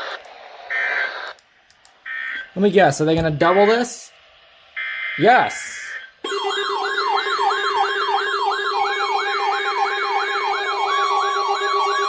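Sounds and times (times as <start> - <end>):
yelping siren alarm tone: 4.8 - 12.0.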